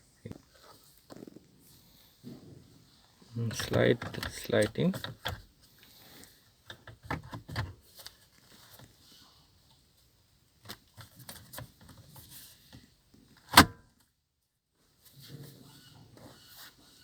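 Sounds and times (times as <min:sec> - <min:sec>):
plastic panel clicks and knocks: 0:03.6 - 0:05.4.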